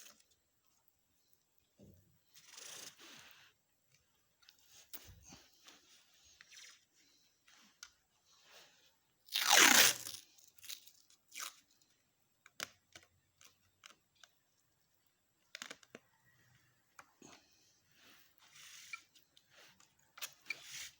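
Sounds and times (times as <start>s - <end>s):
loud tearing: 9.3s - 11.6s.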